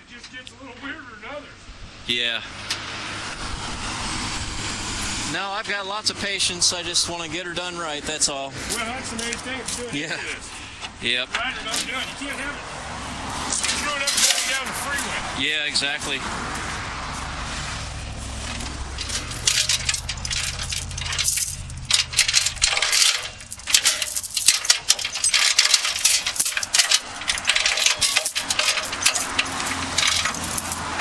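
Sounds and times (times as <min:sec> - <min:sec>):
metal hardware clinking: 0:11.8 - 0:12.4, 0:13.5 - 0:15.0, 0:19.0 - 0:30.9.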